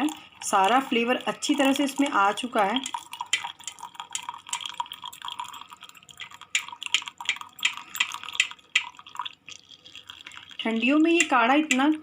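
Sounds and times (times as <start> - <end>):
liquid trickling through strainer: 0.0 - 12.0.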